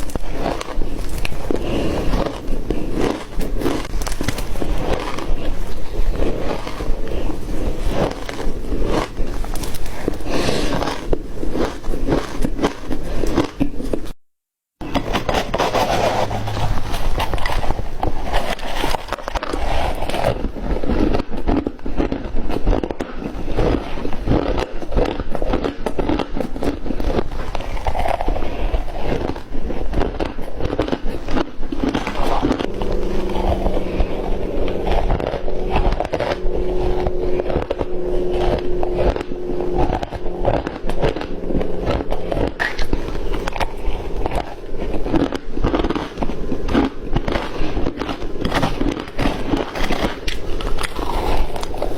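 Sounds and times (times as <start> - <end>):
steady low hum: 0.0 - 13.2, 14.8 - 19.4, 31.6 - 47.7
crunching and chewing ice: 0.0 - 14.2, 14.8 - 51.9.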